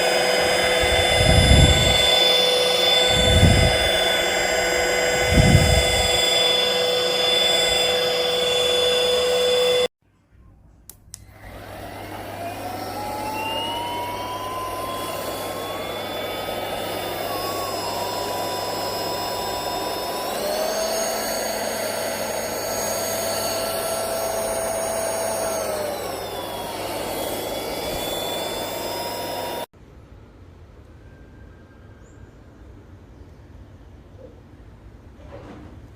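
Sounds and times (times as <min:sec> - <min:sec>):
vacuum cleaner motor whining: 0:00.0 - 0:09.9, 0:11.2 - 0:29.7.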